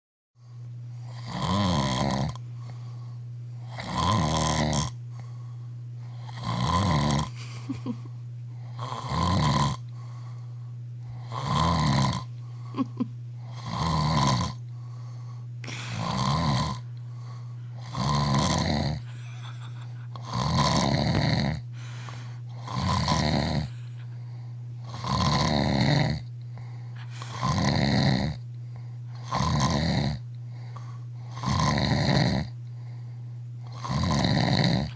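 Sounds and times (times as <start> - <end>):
steady low hum: 0.4 - 34.9
man snoring loudly: 1.1 - 2.4, 3.6 - 5.0, 6.1 - 7.4, 8.7 - 9.8, 11.2 - 14.6, 15.6 - 16.8, 17.8 - 23.9, 24.8 - 26.3, 27.2 - 28.4, 29.2 - 30.2, 31.3 - 32.6, 33.7 - 34.9.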